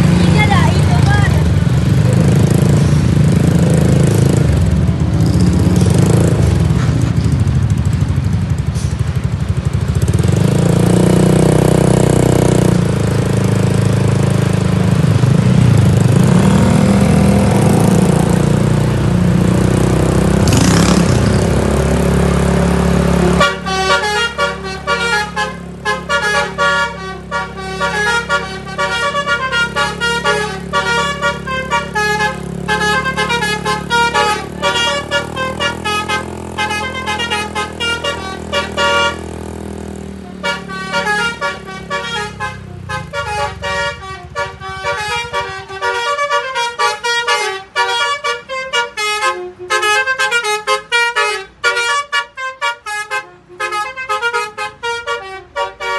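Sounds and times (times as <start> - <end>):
bus engine running: 0.0 - 55.9
bus horn blasts and tune: 22.6 - 55.9.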